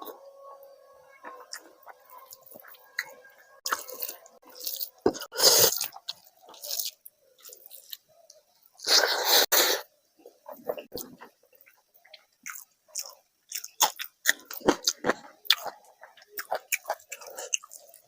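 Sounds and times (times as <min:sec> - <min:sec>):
wet chewing and smacking: 0:10.7 - 0:18.0.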